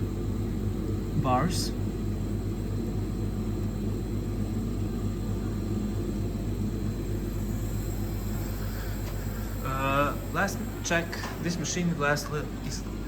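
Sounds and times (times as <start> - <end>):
air dryer humming: 6.3 - 13.0.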